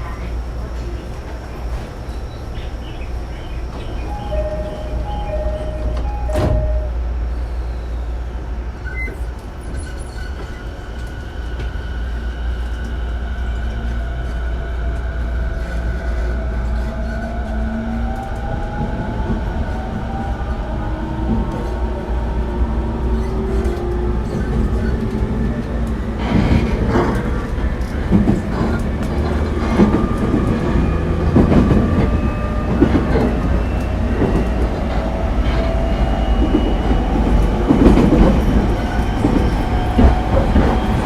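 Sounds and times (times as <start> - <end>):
train rumble: 0.0 - 41.0
two-note chime: 4.1 - 7.0
train door knock: 5.8 - 6.8.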